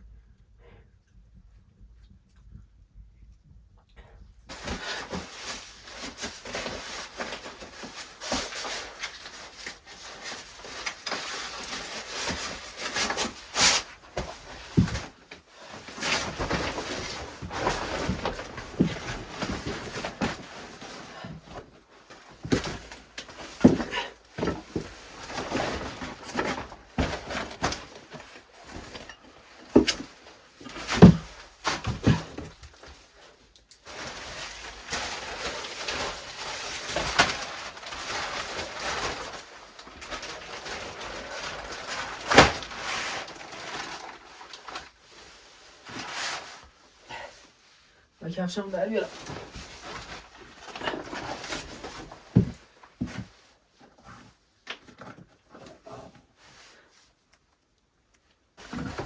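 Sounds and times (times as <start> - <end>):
objects knocking and clunking: 14.1 - 32.8.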